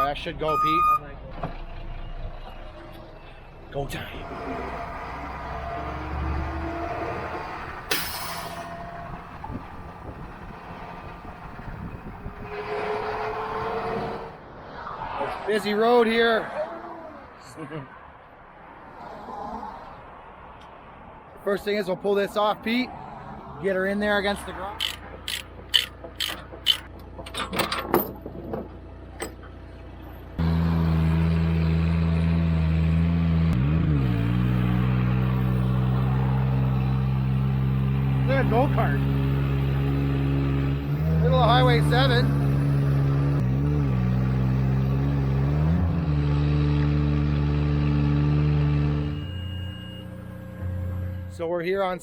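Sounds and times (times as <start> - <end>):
truck engine drone: 0.0 - 17.5, 24.0 - 52.0
truck engine running: 4.1 - 14.3
clicks and knocks: 24.8 - 29.6.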